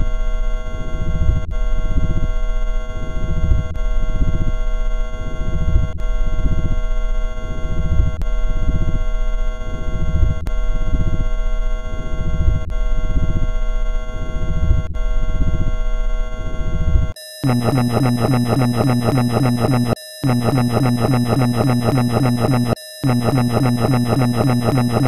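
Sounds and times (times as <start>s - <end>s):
harsh synthesizer tones: 17.2s - 25.0s.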